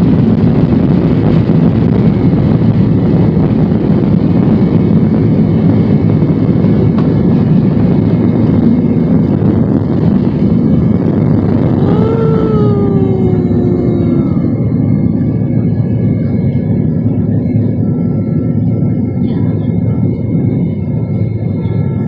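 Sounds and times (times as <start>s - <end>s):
jet engine cabin roar: 0.0s - 22.0s
tone rising and gliding down: 11.8s - 15.7s.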